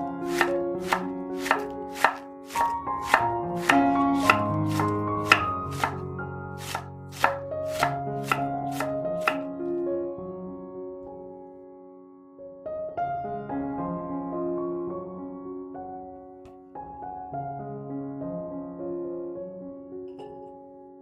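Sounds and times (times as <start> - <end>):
soft piano music: 0.0 - 21.0
knife chopping on cutting board: 0.3 - 6.0, 6.6 - 9.5.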